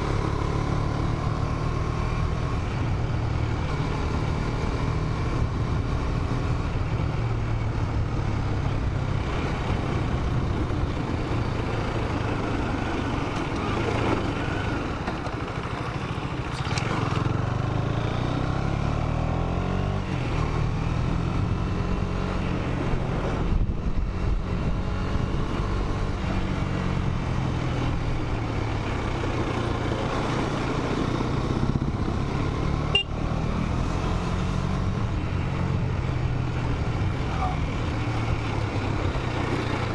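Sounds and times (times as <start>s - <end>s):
motorcycle engine running: 0.0s - 39.9s
wind rush on microphone: 22.6s - 26.5s.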